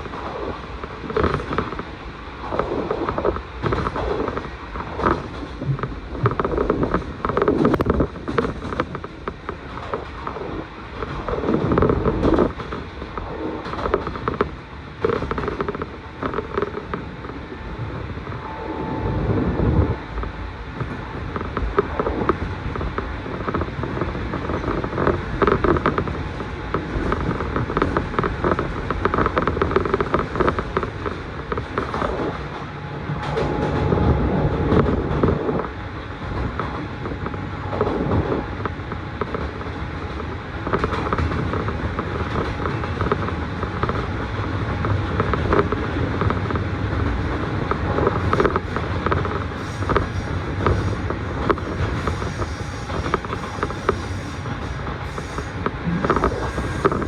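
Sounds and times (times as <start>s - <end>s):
train wheels rumbling on rails: 0.0s - 57.0s.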